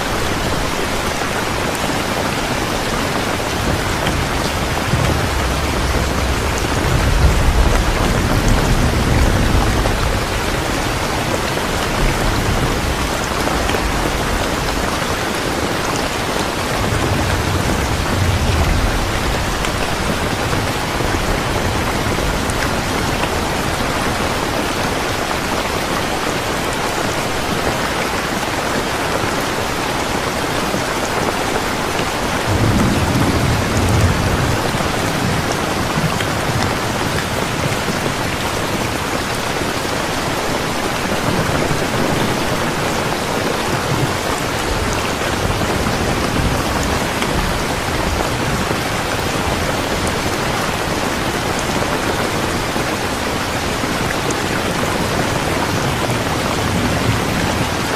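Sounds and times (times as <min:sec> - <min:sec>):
steady rain hiss: 0:00.0 - 0:57.9
thunder rumbling: 0:00.1 - 0:26.6, 0:30.1 - 0:39.7.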